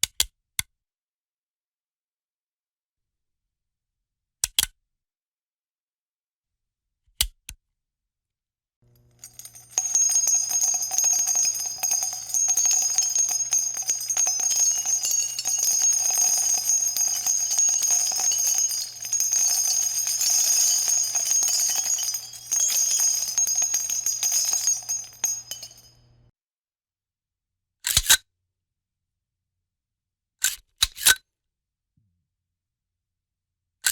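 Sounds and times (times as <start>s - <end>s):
metallic jingling rattle: 9.2s - 26.0s.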